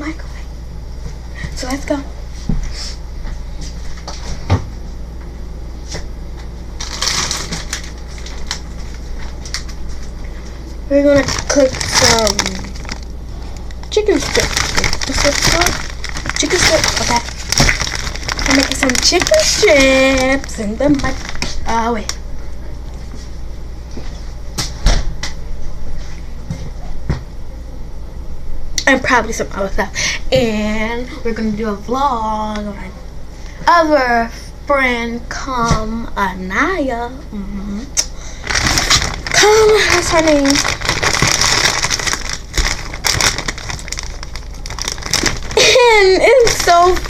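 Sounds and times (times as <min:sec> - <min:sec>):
steady low hum: 0:00.0 - 0:47.0
crinkling rustle: 0:06.8 - 0:22.1, 0:38.4 - 0:47.0.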